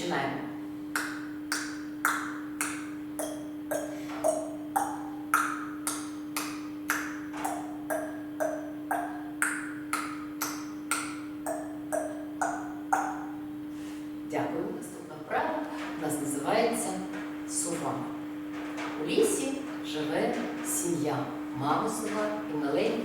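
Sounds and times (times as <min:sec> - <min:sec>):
steady low hum: 0:00.0 - 0:23.0
tongue clicks: 0:00.9 - 0:13.5.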